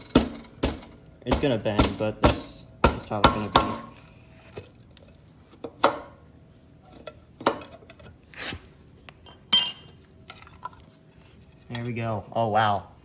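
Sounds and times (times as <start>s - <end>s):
metal tool clinking and scraping: 9.3s - 10.1s.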